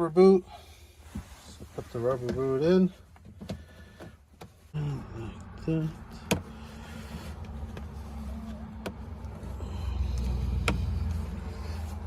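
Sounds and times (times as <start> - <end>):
low steady rumble: 0.4 - 12.0
rubber boot clicks on shifter: 10.2 - 11.2.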